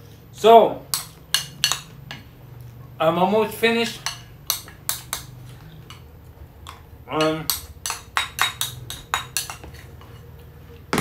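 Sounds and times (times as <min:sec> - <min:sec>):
utensil clinking against a dish: 0:00.9 - 0:02.3, 0:03.7 - 0:10.4.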